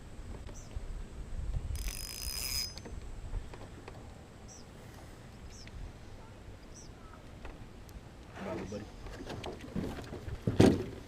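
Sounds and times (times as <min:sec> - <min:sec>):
bird chirping: 0:00.5 - 0:00.8, 0:04.4 - 0:04.8, 0:05.4 - 0:05.7, 0:06.7 - 0:07.2.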